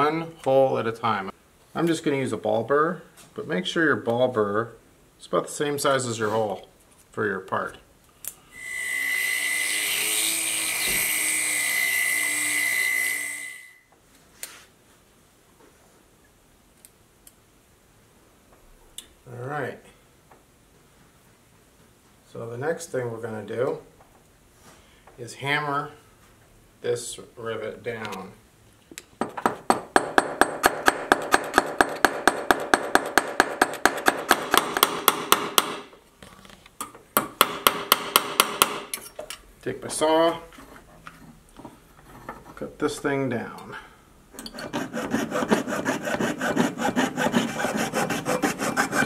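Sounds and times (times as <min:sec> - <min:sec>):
rotary tool high whine: 0:08.5 - 0:13.9.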